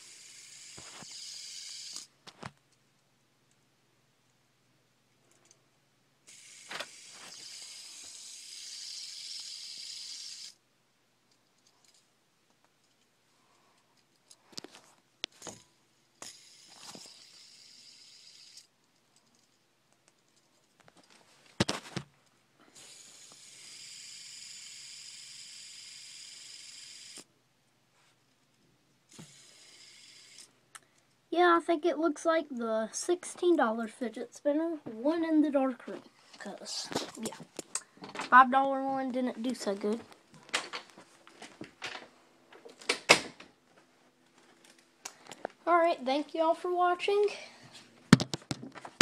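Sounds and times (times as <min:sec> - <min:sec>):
fidget spinner bearing whirring: 0:00.0 - 0:02.2, 0:06.2 - 0:10.6, 0:15.4 - 0:20.8, 0:22.7 - 0:27.3, 0:29.1 - 0:30.8.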